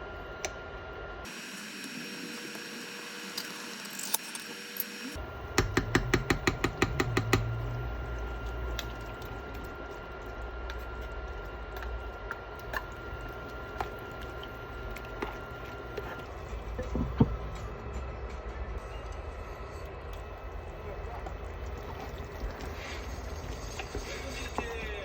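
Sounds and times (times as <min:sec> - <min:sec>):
steady background hum: 0:00.0 - 0:25.0
small clicks and taps: 0:05.6 - 0:07.5.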